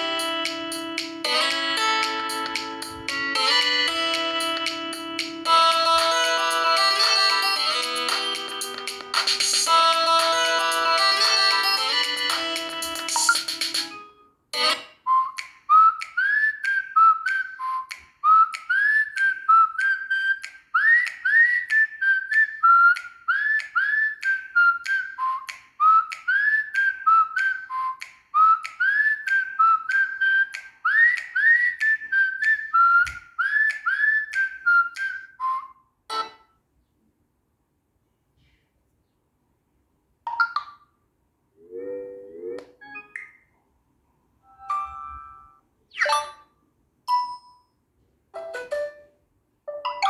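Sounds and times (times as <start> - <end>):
chirping phone ringtone: 1.2 - 14.0, 44.5 - 46.5.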